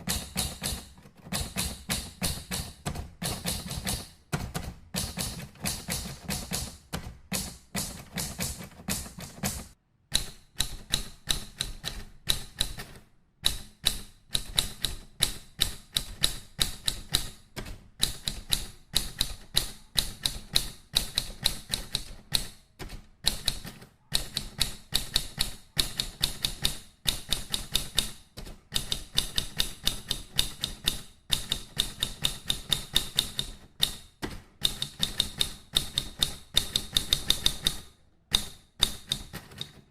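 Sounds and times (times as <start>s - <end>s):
keyboard typing clicks: 0.0s - 39.9s.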